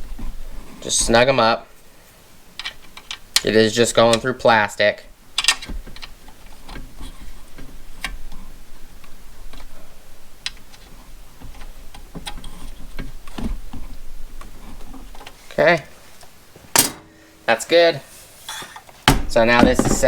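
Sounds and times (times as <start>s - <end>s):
hex key clicking on bolts: 2.6s - 4.3s.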